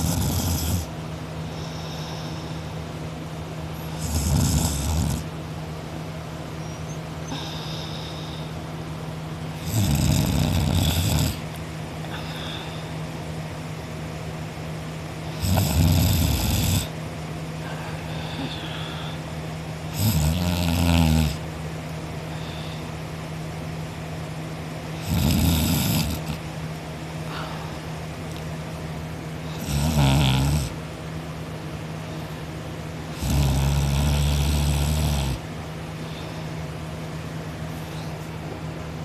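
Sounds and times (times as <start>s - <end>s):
man snoring: 0.0s - 0.9s, 3.8s - 5.3s, 9.6s - 11.5s, 15.3s - 17.0s, 19.9s - 21.4s, 25.0s - 26.4s, 29.5s - 30.8s, 33.1s - 35.4s.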